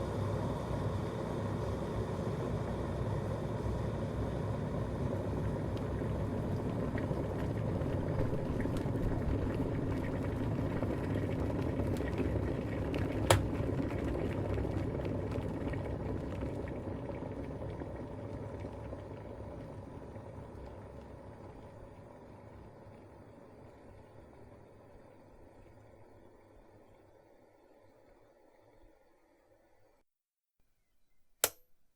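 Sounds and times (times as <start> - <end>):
kettle boiling: 0.0 - 30.0
kettle switch click: 13.3 - 13.5, 31.4 - 31.6.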